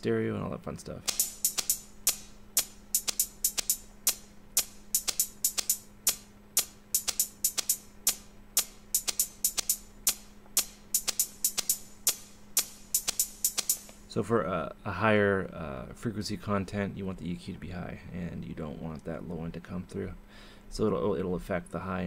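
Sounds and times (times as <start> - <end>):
faint low hum: 0.0 - 22.0
drum machine hi-hat pattern: 1.1 - 14.2.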